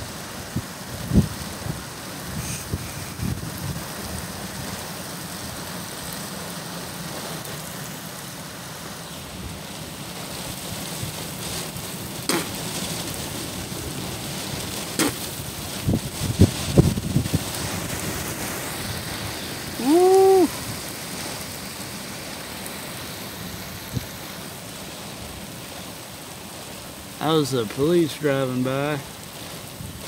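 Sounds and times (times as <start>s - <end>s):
driving rain and wind: 0.0s - 30.0s
sharp knocks: 12.3s - 12.6s, 15.0s - 15.2s.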